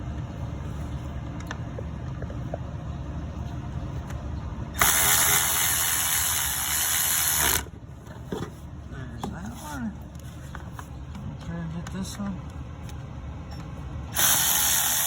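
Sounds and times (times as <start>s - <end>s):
air ratchet running: 4.8s - 7.7s, 14.1s - 15.0s.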